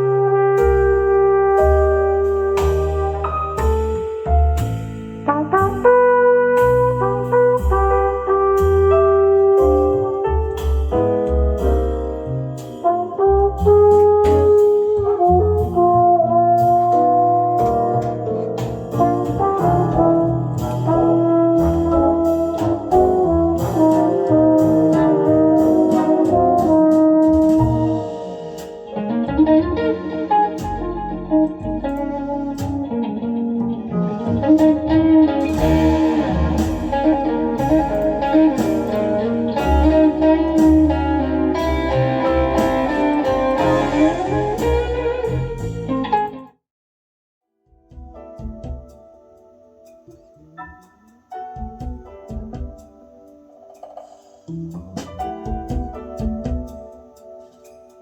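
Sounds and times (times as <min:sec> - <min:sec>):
drums: 0:00.0 - 0:33.0, 0:33.8 - 0:46.3, 0:47.8 - 0:49.2, 0:49.8 - 0:58.0
trumpet melody: 0:00.0 - 0:33.0, 0:34.1 - 0:46.3.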